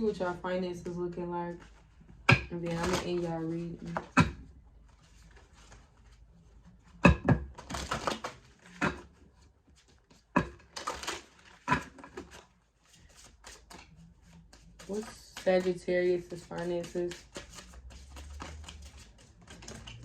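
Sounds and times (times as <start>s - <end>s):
cards being shuffled: 2.6s - 4.2s, 7.6s - 8.8s, 9.8s - 20.0s
cards tapping: 2.7s - 4.4s, 13.1s - 20.0s.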